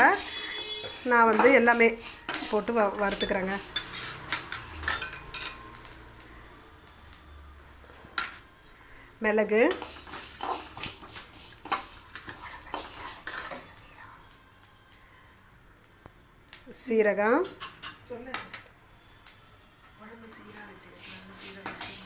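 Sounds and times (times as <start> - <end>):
spoon scraping a pan: 0.0 - 5.6, 9.7 - 13.8, 20.9 - 22.0.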